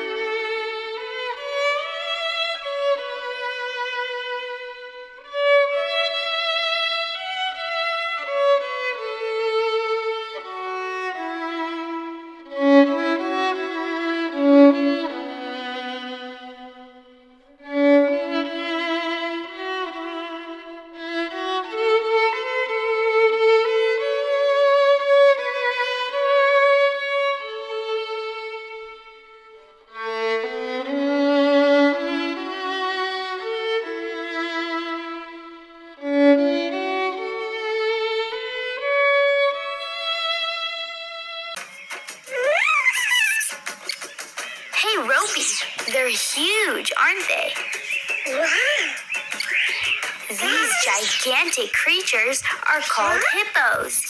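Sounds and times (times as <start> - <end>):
solo violin melody: 0.0 - 41.6.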